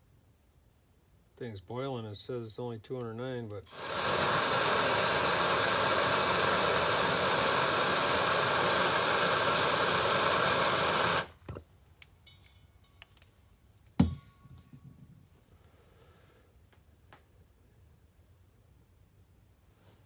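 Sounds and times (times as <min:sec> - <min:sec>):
water boiling in a pot: 0:03.7 - 0:11.4.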